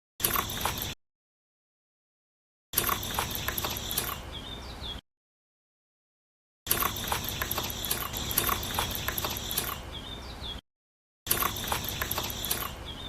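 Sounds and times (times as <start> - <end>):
gear mechanism clicking and whirring: 0.2 - 1.0, 2.8 - 4.3, 6.7 - 9.9, 11.3 - 12.9.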